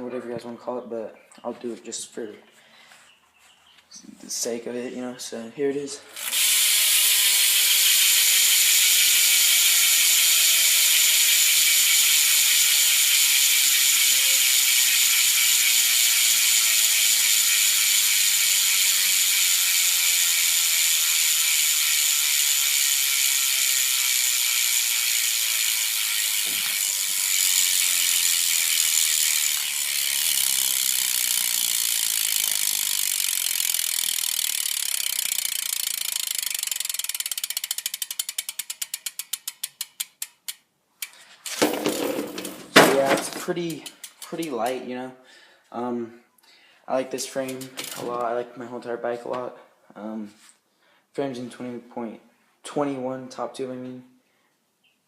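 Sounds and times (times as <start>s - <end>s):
bike hub freewheel clicking: 6.1s - 42.6s, 43.7s - 44.7s, 47.3s - 48.0s.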